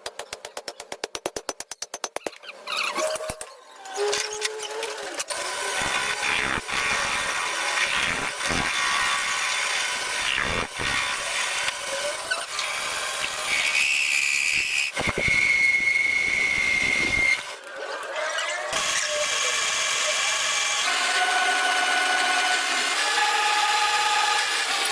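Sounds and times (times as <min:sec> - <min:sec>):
power tools working steel: 0:02.9 - 0:24.9.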